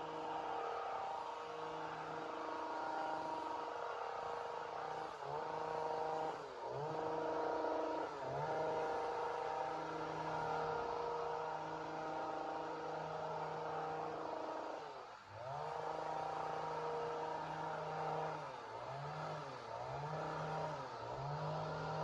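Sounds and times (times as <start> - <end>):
chainsaw running at high speed: 0.0 - 22.0.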